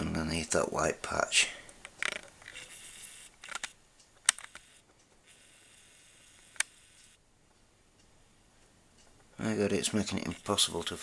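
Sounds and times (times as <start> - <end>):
camera clicks: 2.0 - 5.7, 6.3 - 7.2
faint hiss: 4.6 - 11.0.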